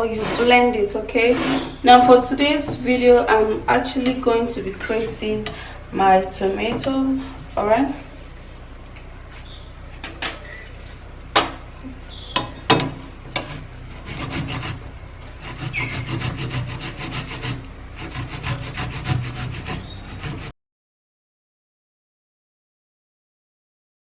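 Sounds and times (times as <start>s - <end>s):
tomato rasping on metal grater: 15.6s - 20.5s.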